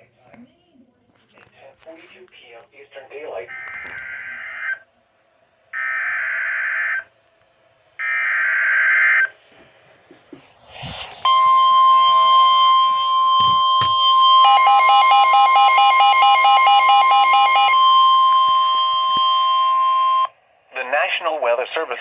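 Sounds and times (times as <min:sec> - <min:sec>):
electronic attention tone: 0:10.9 - 0:20.3
electronic data bursts: 0:10.9 - 0:20.3.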